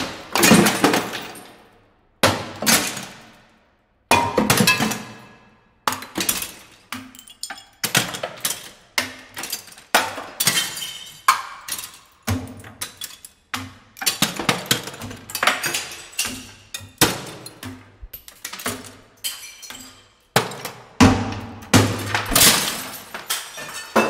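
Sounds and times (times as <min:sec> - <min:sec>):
glass breaking: 0:09.4 - 0:12.0, 0:14.0 - 0:20.6, 0:21.7 - 0:24.0
tinkling glass shards: 0:22.3 - 0:24.0.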